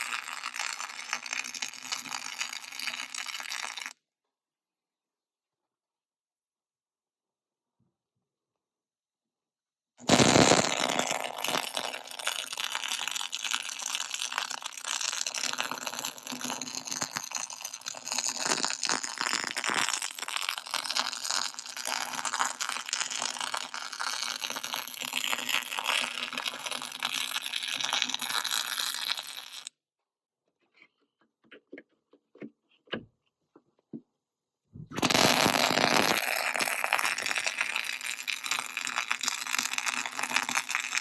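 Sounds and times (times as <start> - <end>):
welding arc crackling sizzle: 0.0 - 3.9, 10.0 - 29.7, 34.9 - 41.0.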